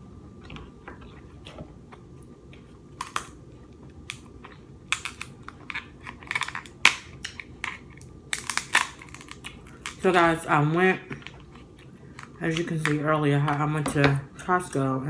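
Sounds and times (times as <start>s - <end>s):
crab shells cracking: 2.9s - 3.4s, 4.0s - 10.4s, 11.1s - 13.7s.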